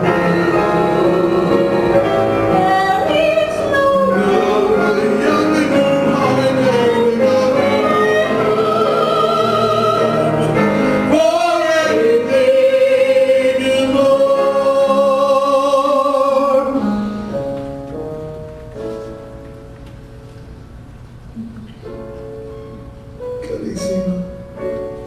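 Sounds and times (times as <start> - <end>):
voices singing with vibrato: 0.0 - 16.8
musical accompaniment: 0.0 - 25.0.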